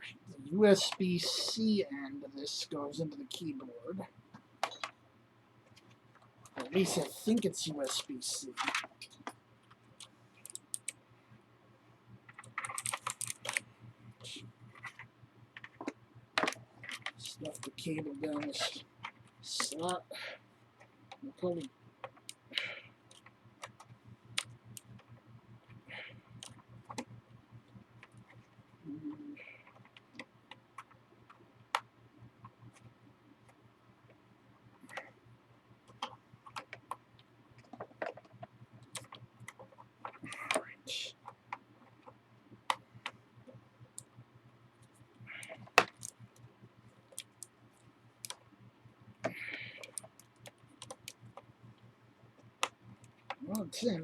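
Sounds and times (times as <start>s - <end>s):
faint low hum: 0.0s - 54.0s
mechanical keyboard clicks and taps: 12.3s - 13.6s, 49.8s - 51.4s.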